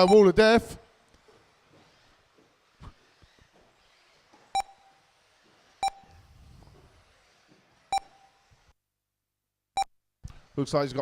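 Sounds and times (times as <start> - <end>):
short electronic beeps: 4.5 - 5.0, 5.8 - 6.1, 7.9 - 8.4.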